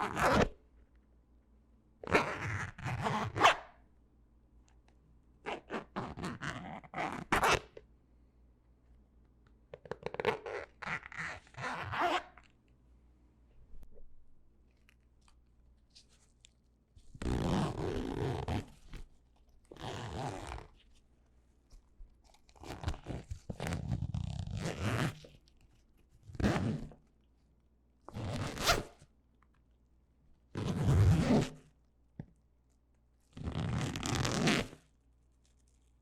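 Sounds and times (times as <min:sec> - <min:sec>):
zipper being pulled: 0:00.0 - 0:00.6, 0:02.0 - 0:03.7, 0:05.5 - 0:07.6, 0:10.0 - 0:12.4, 0:17.2 - 0:20.8, 0:22.2 - 0:25.3, 0:26.3 - 0:27.0, 0:28.1 - 0:29.0, 0:30.5 - 0:31.7, 0:33.4 - 0:34.9.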